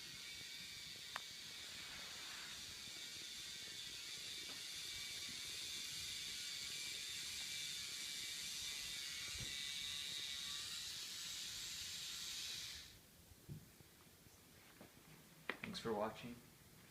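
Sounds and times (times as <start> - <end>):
toy train motor whirring: 0.0 - 13.0.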